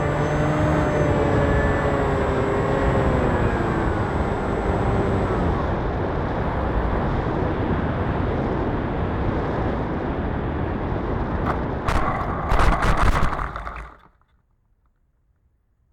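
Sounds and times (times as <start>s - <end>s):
knocks and scraping: 11.5s - 14.1s.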